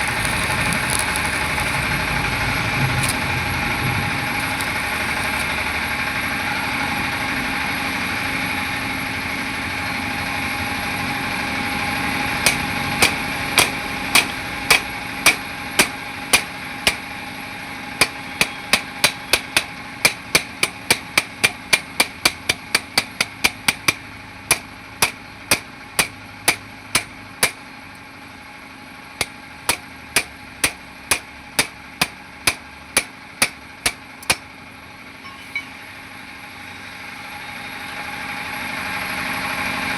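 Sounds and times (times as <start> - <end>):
hammer striking metal: 12.4 - 17.1, 18.0 - 27.6, 29.2 - 34.4.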